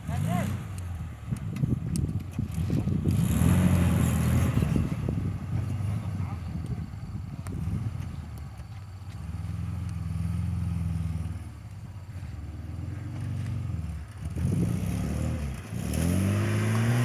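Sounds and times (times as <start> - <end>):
car engine revving: 3.0 - 6.4, 12.2 - 17.0.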